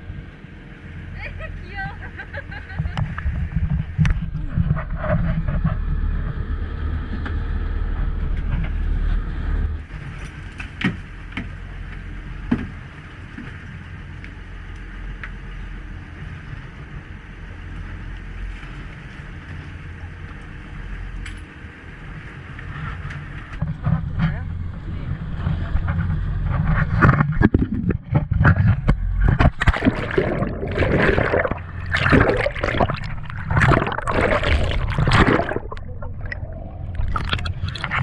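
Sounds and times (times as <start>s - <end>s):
engine rumbling: 0.0s - 38.0s.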